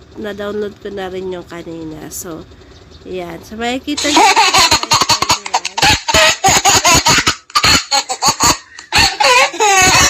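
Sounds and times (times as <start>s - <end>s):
rapid recorded laughter: 4.0s - 10.0s.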